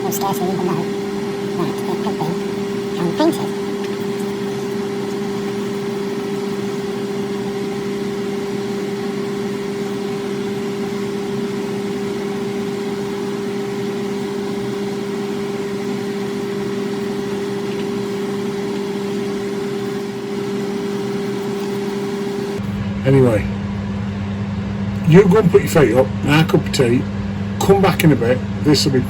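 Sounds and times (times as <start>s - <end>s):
low machine hum: 0.0s - 29.0s.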